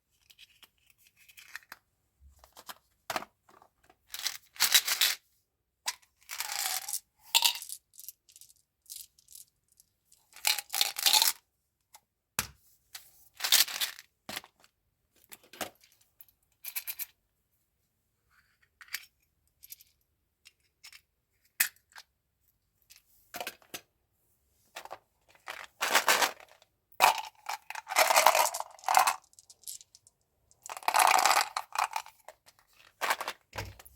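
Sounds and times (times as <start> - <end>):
candy packaging rustling: 24.7 - 33.9
hard candies knocking together: 26.0 - 29.8.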